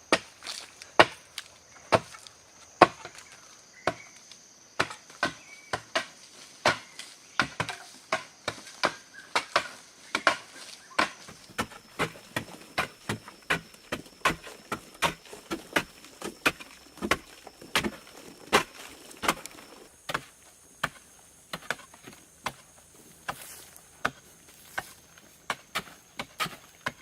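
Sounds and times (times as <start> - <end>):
chopping on wood: 1.0 - 1.2, 2.8 - 4.1, 4.8 - 22.6.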